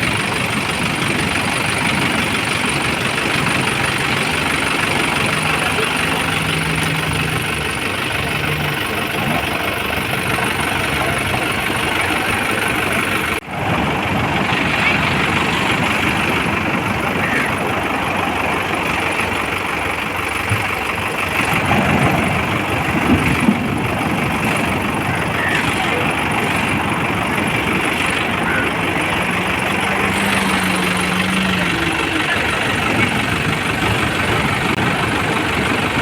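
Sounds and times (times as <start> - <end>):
boat engine running: 0.0 - 36.0.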